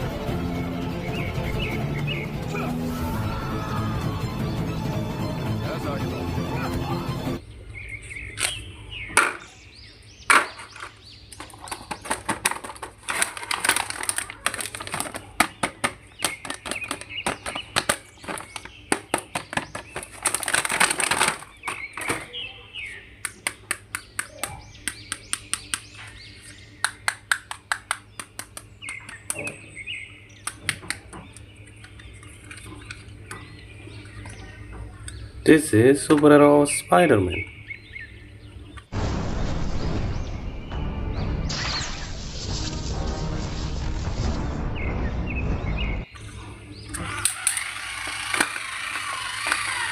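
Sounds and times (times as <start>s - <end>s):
plastic toys clicking and snapping: 10.3s - 22.3s, 23.2s - 26.2s, 26.8s - 29.6s, 30.4s - 33.4s, 46.9s - 49.9s
plastic packaging crinkling: 11.4s - 22.2s.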